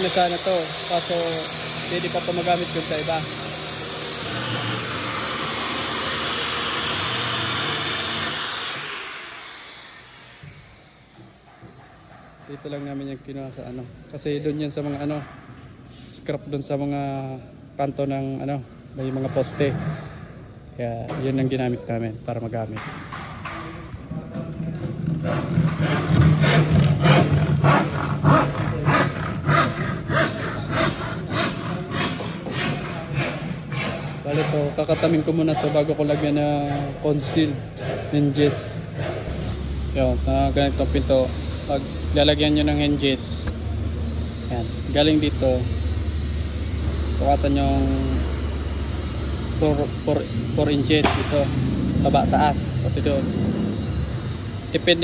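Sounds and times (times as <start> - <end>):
mechanical motor running: 0.0 - 11.4
hand tool rasping on wood: 25.2 - 39.3.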